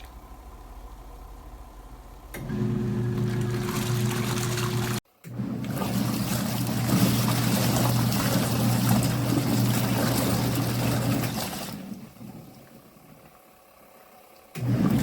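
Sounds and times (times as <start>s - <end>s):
steady low hum: 0.0s - 2.5s
water sloshing in washing machine: 2.4s - 13.3s, 14.5s - 15.0s.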